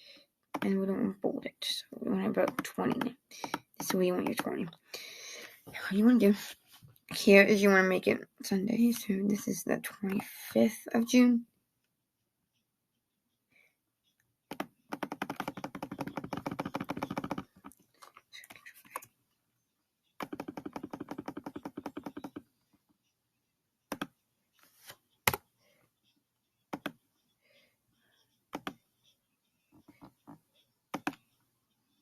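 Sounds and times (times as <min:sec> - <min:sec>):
computer keyboard clicking: 0:02.4 - 0:04.5, 0:14.5 - 0:17.8, 0:20.2 - 0:22.4, 0:23.9 - 0:24.1, 0:26.7 - 0:27.0, 0:28.5 - 0:28.8, 0:30.0 - 0:31.2.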